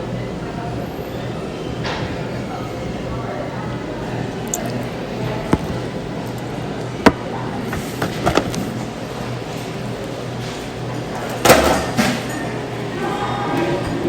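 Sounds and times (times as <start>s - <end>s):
room noise: 4.2s - 9.2s.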